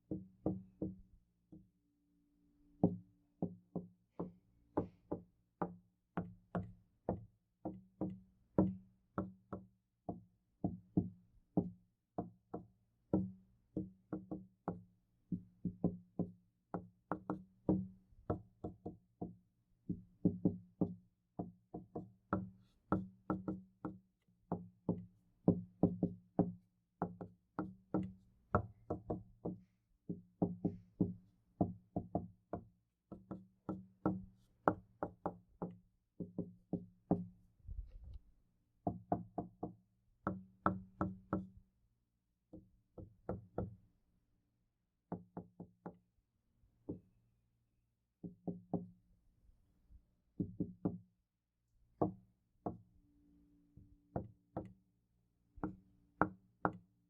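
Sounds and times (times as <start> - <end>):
knuckles knocking on wooden door: 20.2 - 37.2, 50.4 - 51.0.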